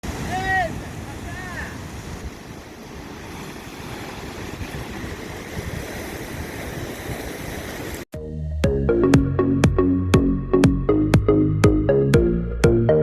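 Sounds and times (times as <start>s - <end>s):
ocean surf: 0.0s - 8.1s
wind: 0.0s - 8.1s
electronic music with beat: 8.2s - 13.0s.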